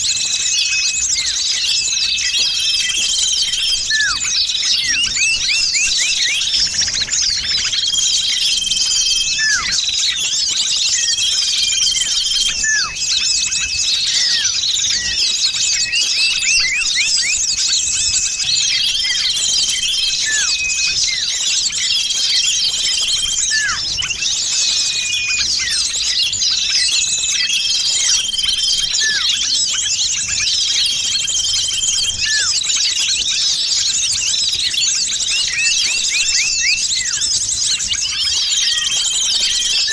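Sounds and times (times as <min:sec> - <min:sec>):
small birds chirping and twittering: 0:00.0 - 0:39.9
downward-swooping bird call: 0:03.5 - 0:06.6, 0:09.2 - 0:09.8, 0:12.4 - 0:13.0, 0:23.4 - 0:23.8, 0:28.9 - 0:29.5.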